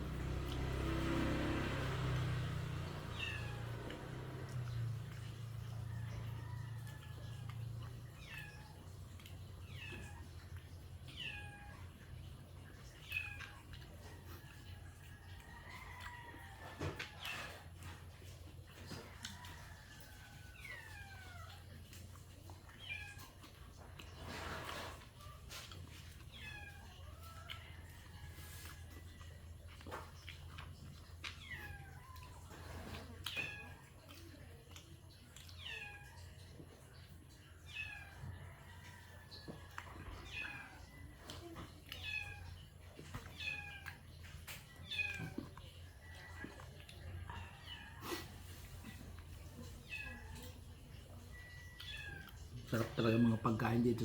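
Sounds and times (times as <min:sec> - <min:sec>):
cat meowing: 0:03.0 - 0:04.4, 0:07.0 - 0:09.0, 0:09.6 - 0:12.0, 0:20.5 - 0:21.8, 0:25.2 - 0:27.6, 0:31.3 - 0:34.1, 0:35.5 - 0:36.5, 0:37.5 - 0:38.5, 0:40.2 - 0:40.9, 0:41.5 - 0:45.6, 0:49.6 - 0:50.6, 0:51.3 - 0:53.0.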